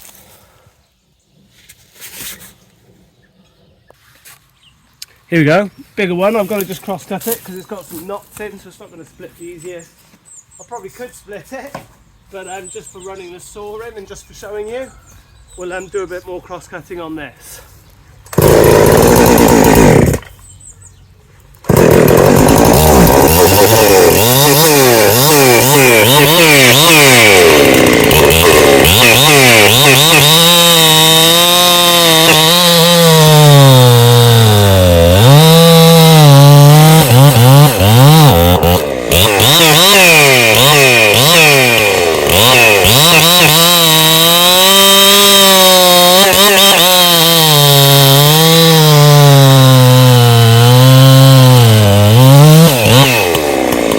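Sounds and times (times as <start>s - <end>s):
chainsaw cutting log: 18.3s - 20.4s, 21.6s - 53.9s.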